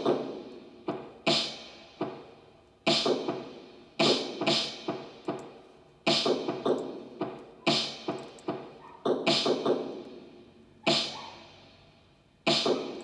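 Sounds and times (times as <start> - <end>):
drums playing: 2.9 - 5.4, 6.1 - 8.6.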